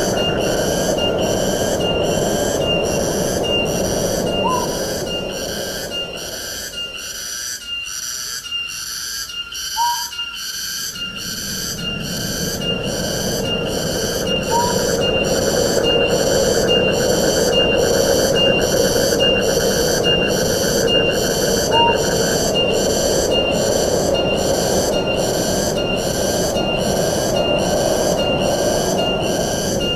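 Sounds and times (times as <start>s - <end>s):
wind rushing through trees: 0.0s - 8.0s, 9.4s - 29.9s
short rising whistled calls: 2.6s - 13.6s, 14.2s - 15.3s, 20.8s - 22.8s
high steady pulsing: 10.9s - 29.9s.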